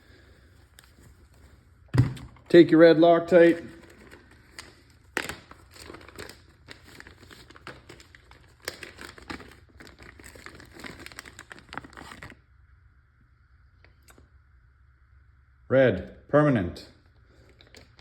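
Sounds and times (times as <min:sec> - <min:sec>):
packaging crinkling: 0:03.3 - 0:12.4, 0:17.3 - 0:18.0.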